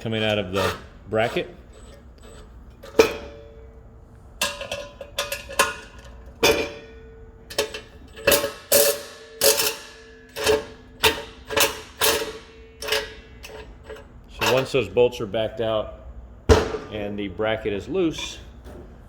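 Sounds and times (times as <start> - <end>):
wrench clicking and clanking on metal: 7.5 - 14.8.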